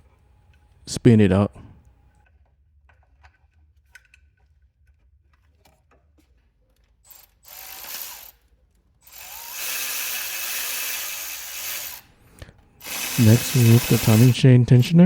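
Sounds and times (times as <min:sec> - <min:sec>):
ratchet wrench ratcheting: 0:07.1 - 0:08.4, 0:09.0 - 0:12.0, 0:12.8 - 0:14.4.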